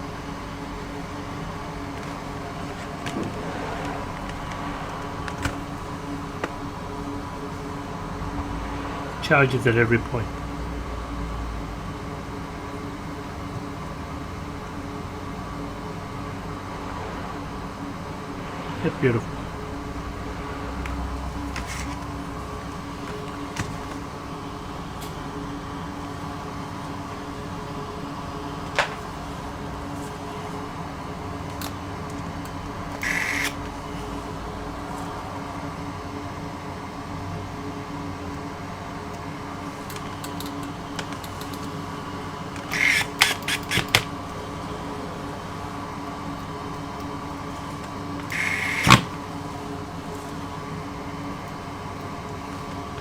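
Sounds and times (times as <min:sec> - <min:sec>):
steady hum: 0:00.0 - 0:53.0
scraping rustles: 0:01.4 - 0:06.7, 0:20.9 - 0:24.2.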